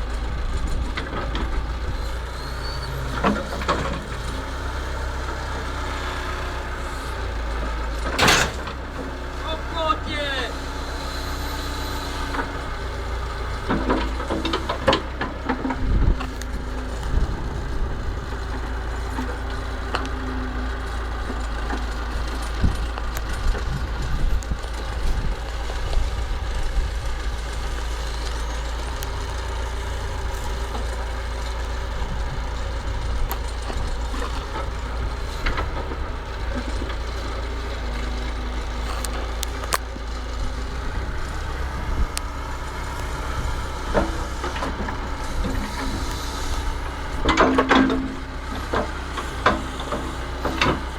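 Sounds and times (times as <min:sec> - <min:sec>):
diesel engine running: 0:00.0 - 0:50.9
knocks and clanks: 0:08.0 - 0:08.8, 0:47.1 - 0:50.9.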